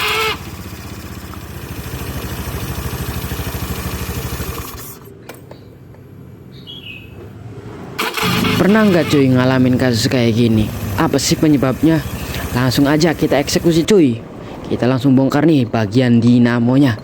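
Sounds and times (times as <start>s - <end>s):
scooter starter motor spinning: 0.0s - 5.1s, 8.0s - 13.9s.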